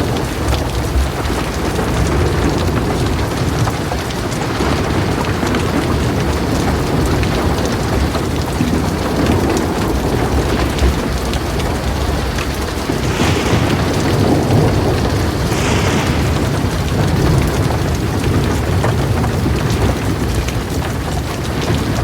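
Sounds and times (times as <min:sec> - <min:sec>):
heavy rain falling: 0:00.0 - 0:22.0
thunder rumbling: 0:10.4 - 0:22.0
sharp drop hits: 0:13.1 - 0:17.9.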